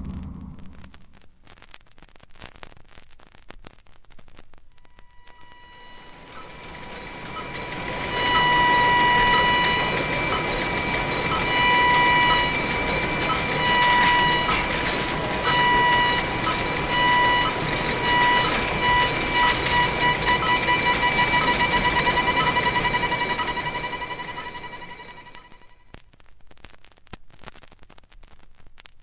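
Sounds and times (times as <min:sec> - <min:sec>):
short electronic blips: 0:11.3 - 0:25.6.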